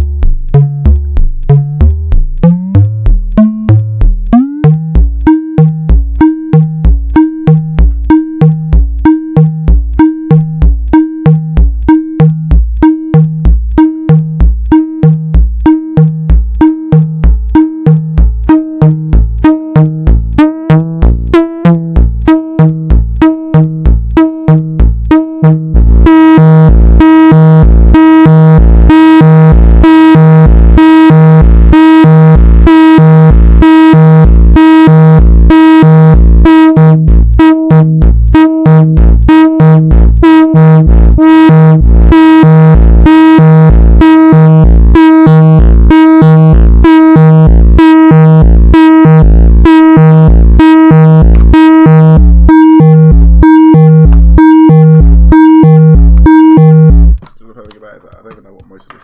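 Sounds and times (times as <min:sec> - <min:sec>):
synthesizer arpeggiated bass notes: 0:00.0 - 0:59.0.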